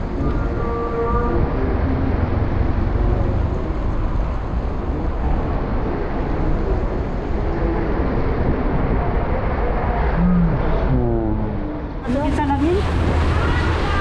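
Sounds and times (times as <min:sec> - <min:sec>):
storm wind buffeting microphone: 0:00.0 - 0:14.0
rain hiss: 0:12.0 - 0:14.0.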